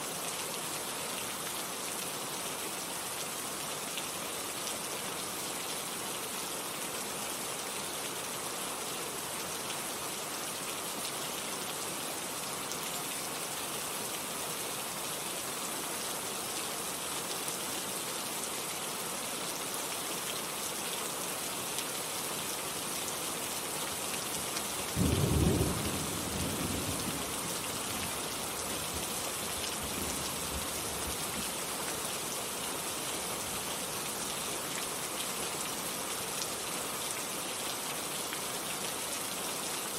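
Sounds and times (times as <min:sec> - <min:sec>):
heavy rain hissing: 0:24.6 - 0:35.1.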